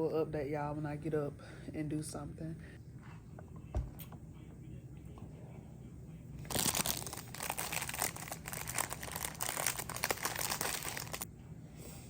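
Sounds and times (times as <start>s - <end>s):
packaging crinkling and rustling: 6.5s - 11.2s.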